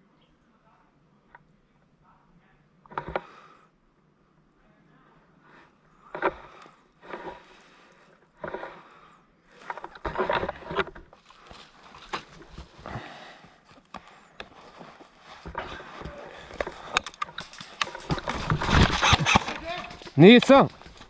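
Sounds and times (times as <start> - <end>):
footsteps crunching through dry vegetation: 10.3 - 17.0.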